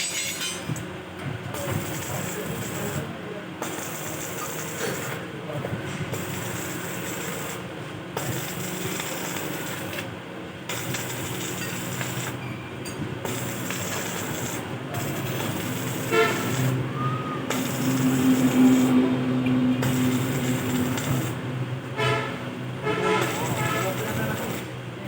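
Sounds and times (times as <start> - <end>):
motor vehicle engine drone: 13.0 - 25.0.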